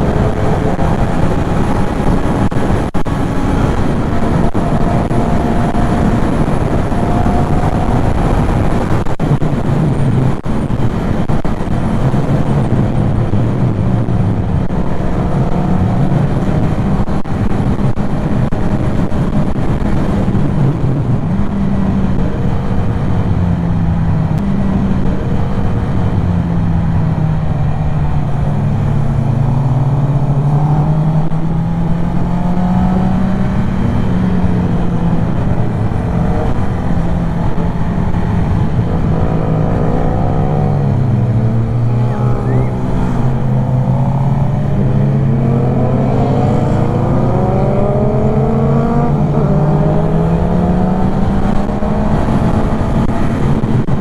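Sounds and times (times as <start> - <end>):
motorcycle engine running: 0.0 - 18.8, 32.8 - 54.0
rushing wind noise: 0.0 - 54.0.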